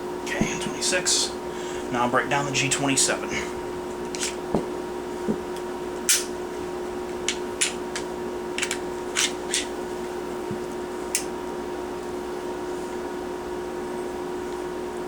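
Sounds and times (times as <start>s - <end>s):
steady low hum: 0.0s - 15.0s
pistol parts clicking: 8.6s - 9.7s.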